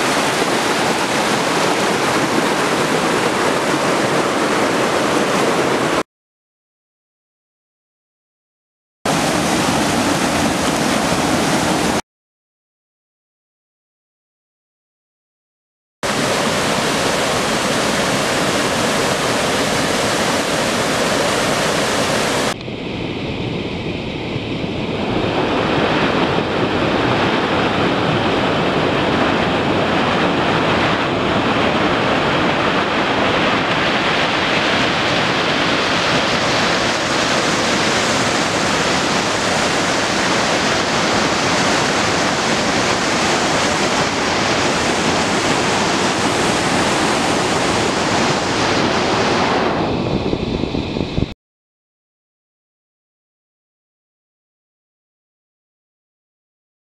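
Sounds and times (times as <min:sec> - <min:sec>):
waterfall rushing: 0:00.0 - 0:06.0, 0:09.1 - 0:12.0, 0:16.0 - 0:22.6, 0:31.4 - 0:49.4.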